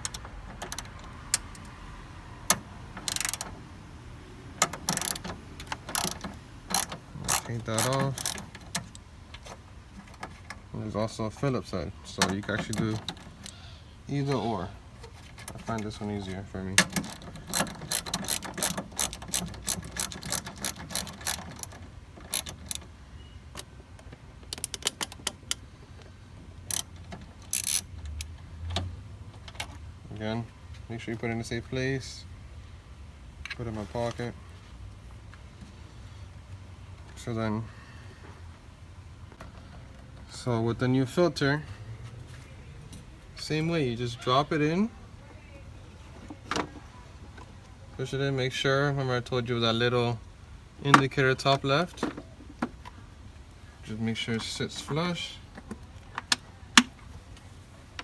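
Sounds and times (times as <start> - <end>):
ratchet wrench clicking: 2.5 - 3.6, 4.6 - 9.1, 16.9 - 22.8, 24.5 - 25.6, 26.7 - 28.4.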